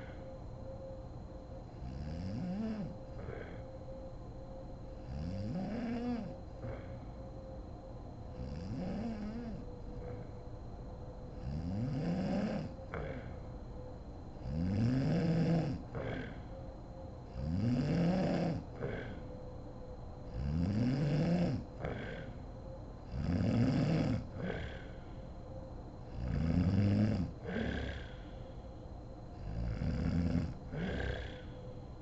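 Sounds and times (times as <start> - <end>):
woman snoring: 0.0 - 0.2, 1.8 - 3.7, 5.0 - 7.2, 8.4 - 10.4, 11.4 - 13.4, 14.4 - 16.5, 17.3 - 19.3, 20.3 - 22.4, 23.1 - 25.2, 26.1 - 28.4, 29.3 - 31.6
faint steady hum: 0.0 - 32.0.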